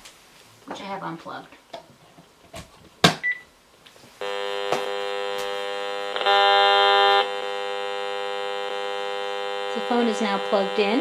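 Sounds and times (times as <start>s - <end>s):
meter harsh buzz: 4.2s - 11.0s.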